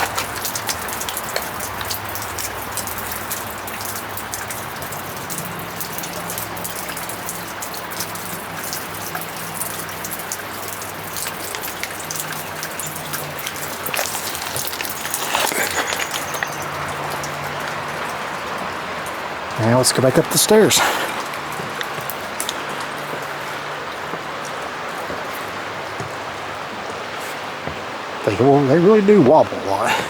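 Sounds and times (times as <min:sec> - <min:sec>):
river rushing: 0:00.0 - 0:30.0
water splashing: 0:00.0 - 0:30.0.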